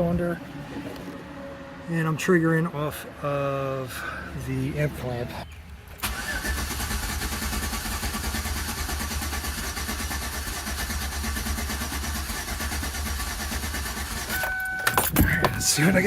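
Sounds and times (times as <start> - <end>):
engine cranking by starter: 5.9 - 16.0.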